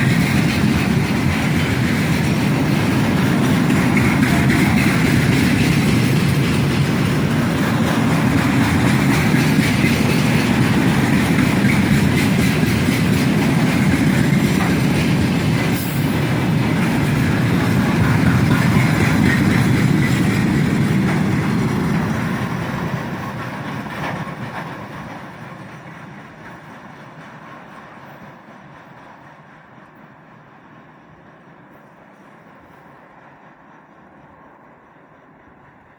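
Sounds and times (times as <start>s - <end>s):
train wheels clattering: 0.0s - 35.9s.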